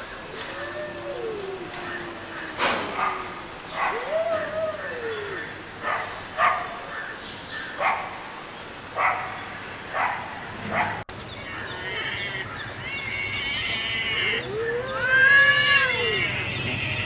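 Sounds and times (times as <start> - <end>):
dog barking: 3.0 - 3.2, 3.8 - 4.0, 5.8 - 6.8, 7.8 - 8.1, 9.0 - 11.0
cat yowling: 11.4 - 17.0.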